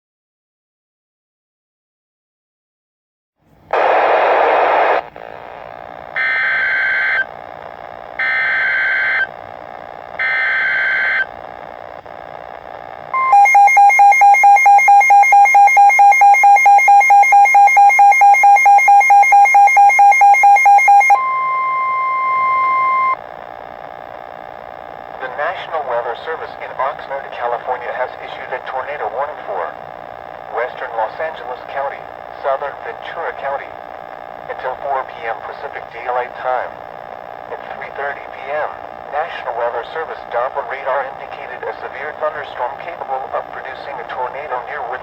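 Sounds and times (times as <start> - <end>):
rapidly pulsing alarm tone: 13.2 - 23.2.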